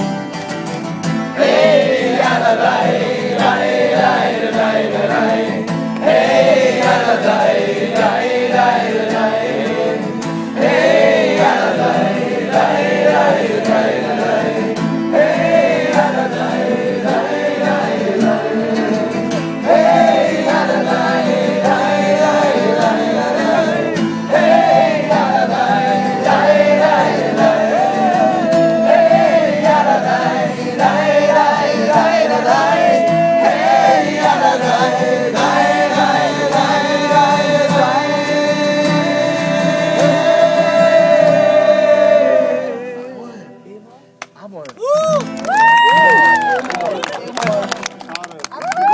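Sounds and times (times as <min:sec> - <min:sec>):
group of people singing: 0:00.4 - 0:43.8.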